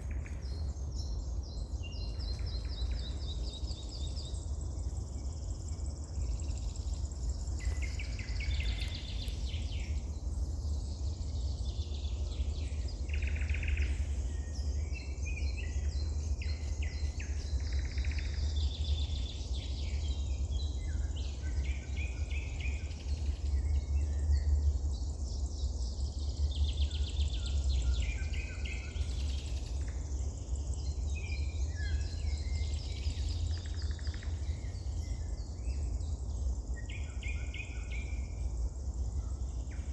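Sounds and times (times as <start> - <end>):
songbirds singing and calling: 0.0 - 39.9.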